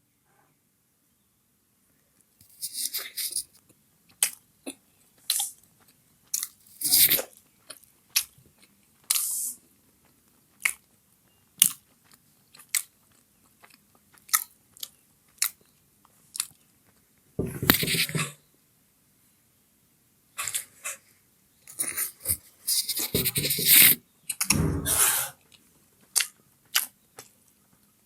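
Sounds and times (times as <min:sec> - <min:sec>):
chewing with wet mouth clicks: 0:02.5 - 0:09.3, 0:10.0 - 0:10.9, 0:11.6 - 0:16.7, 0:25.5 - 0:27.3
burst of noise: 0:22.9 - 0:25.3.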